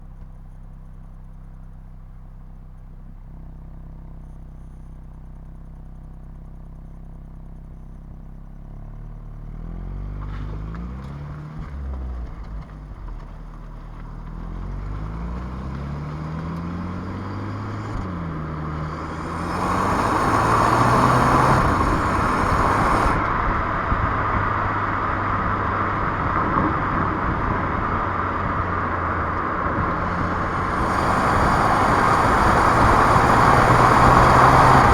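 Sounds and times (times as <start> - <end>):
petrol engine idling and revving: 0.0 - 34.9
turbo rushing noise: 17.7 - 23.3, 28.6 - 34.9.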